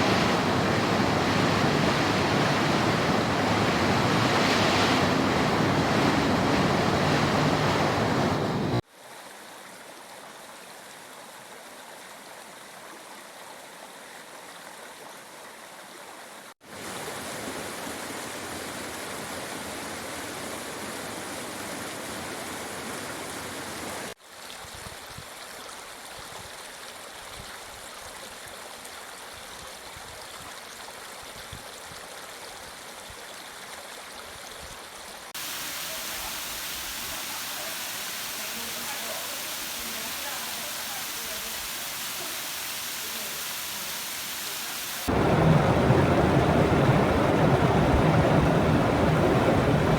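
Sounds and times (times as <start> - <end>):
water rushing: 0.0 - 8.8, 16.6 - 24.2, 35.4 - 49.9.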